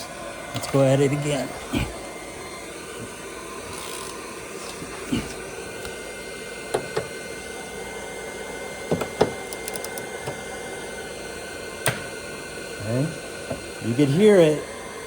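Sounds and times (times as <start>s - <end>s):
steady hum: 0.0s - 15.0s
torque wrench clicking: 3.7s - 4.2s, 9.0s - 10.4s.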